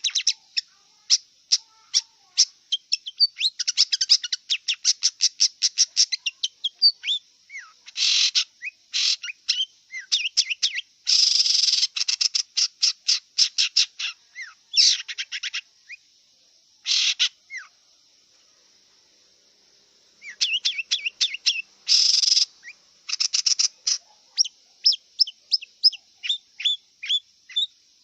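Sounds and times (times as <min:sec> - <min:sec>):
harsh rasping bird calls: 0:00.0 - 0:16.0, 0:16.8 - 0:17.8, 0:20.2 - 0:27.7
bird chattering notes: 0:20.2 - 0:27.2.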